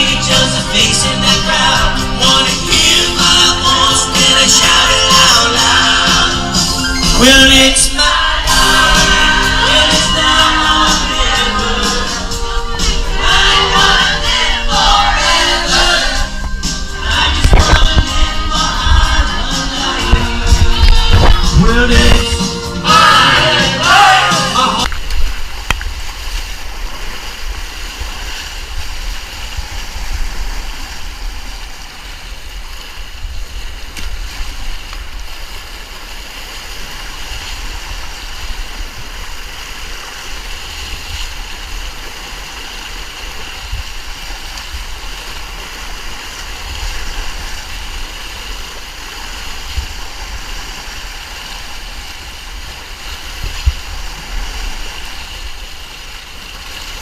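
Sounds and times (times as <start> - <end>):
whitewater river rushing: 0.0 - 57.0
low rumble: 7.4 - 23.1.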